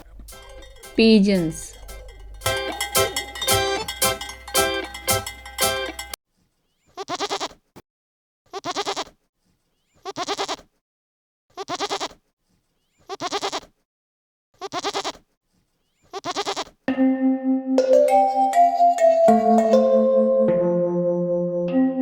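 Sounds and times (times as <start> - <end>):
animal bleating: 6.9 - 7.6, 8.5 - 9.2, 10.0 - 10.7, 11.5 - 12.2, 13.0 - 13.8, 14.6 - 15.2, 16.0 - 16.8.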